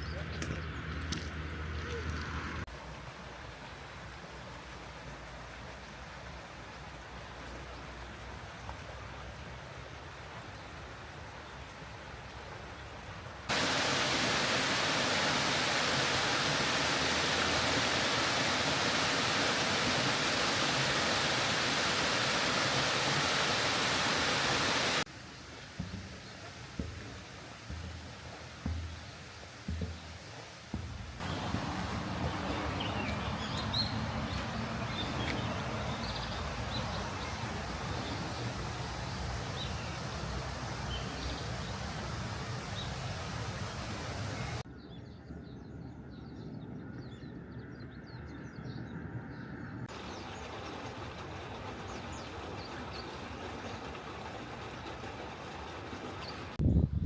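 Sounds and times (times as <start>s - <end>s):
outdoor background noise: 0.0s - 57.0s
small birds chirping: 31.2s - 48.9s, 49.9s - 56.9s.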